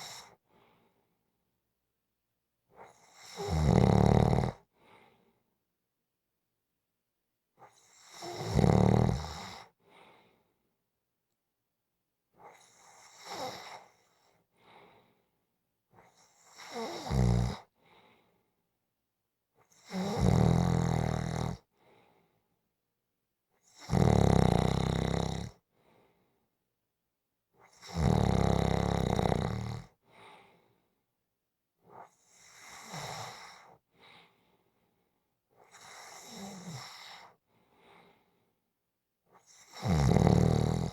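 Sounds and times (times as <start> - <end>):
person snoring: 3.2 - 4.5, 8.2 - 9.6, 19.9 - 21.6, 23.9 - 25.5, 27.8 - 29.8, 39.8 - 40.9.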